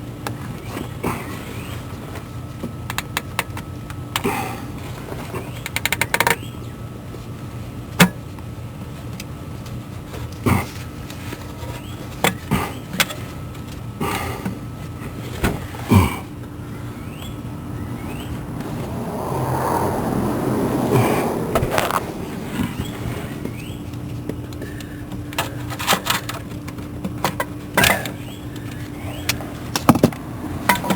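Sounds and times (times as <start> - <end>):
steady hum: 15.8 - 25.8.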